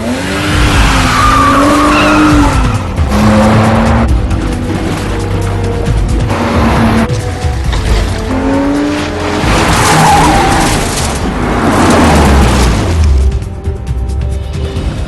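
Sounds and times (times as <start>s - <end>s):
car engine revving: 0.0s - 7.2s
film score music: 0.0s - 15.0s
tyres squealing: 0.5s - 4.0s.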